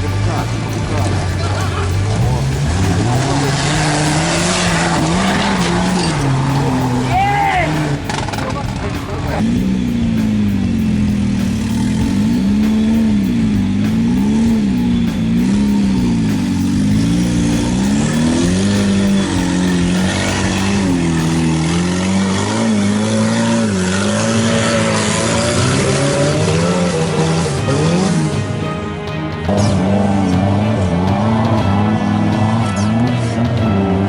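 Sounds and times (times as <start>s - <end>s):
engine revving up and down: 0.0s - 34.0s.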